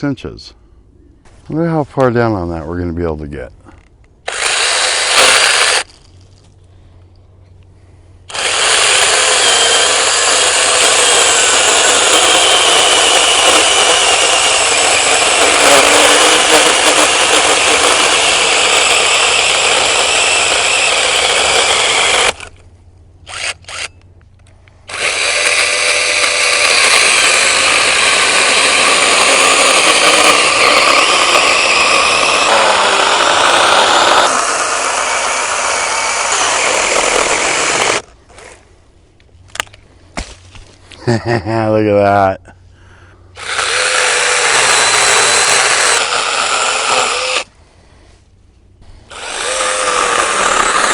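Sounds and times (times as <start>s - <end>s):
battery chainsaw cutting branch: 4.3s - 6.0s, 8.3s - 22.6s, 24.9s - 38.6s, 43.4s - 47.5s, 49.1s - 50.9s.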